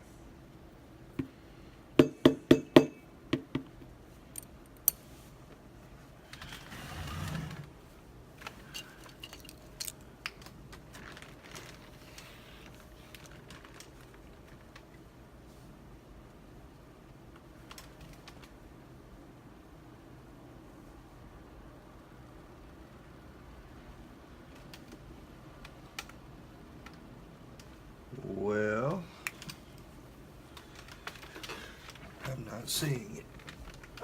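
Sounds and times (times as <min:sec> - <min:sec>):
rustle: 0:04.0 - 0:16.5
metal lock parts clicking: 0:08.6 - 0:10.0.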